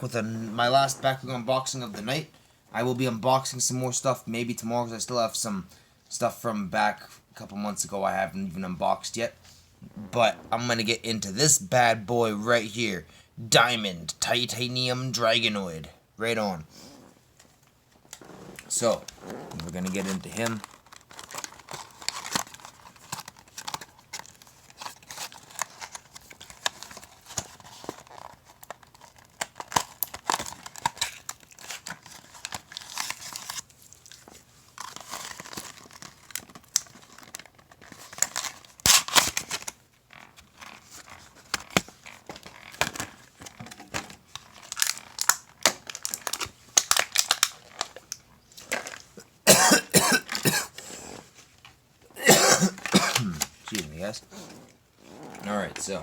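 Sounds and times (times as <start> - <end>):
packaging crinkling and crackling: 17.4 - 49.2
person coughing: 49.5 - 50.8, 52.2 - 53.4.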